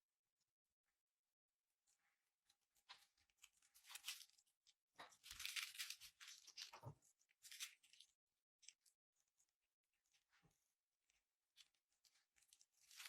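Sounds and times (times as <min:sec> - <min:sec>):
crisp crunching and tearing: 0:03.8 - 0:04.4, 0:05.1 - 0:06.8, 0:12.4 - 0:13.0.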